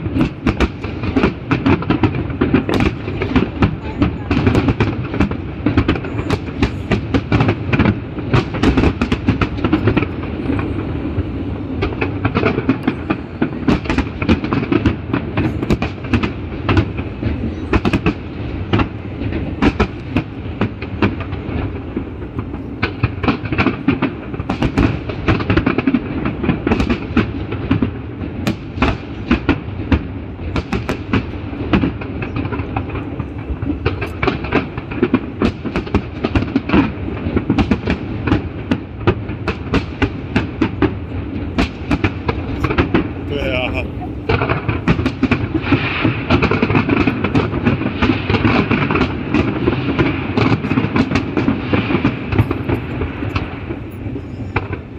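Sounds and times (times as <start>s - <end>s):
steady low rumble: 0.0s - 25.2s, 40.2s - 54.9s
fireworks bangs and crackles: 0.0s - 54.9s.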